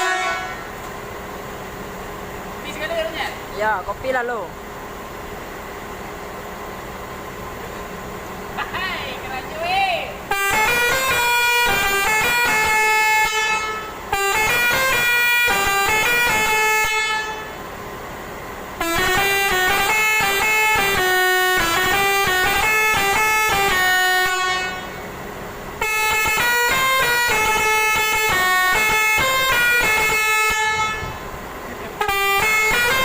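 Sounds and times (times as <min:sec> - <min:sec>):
bus horn playing a melody: 0:00.0 - 0:00.8, 0:10.2 - 0:17.8, 0:18.7 - 0:33.0.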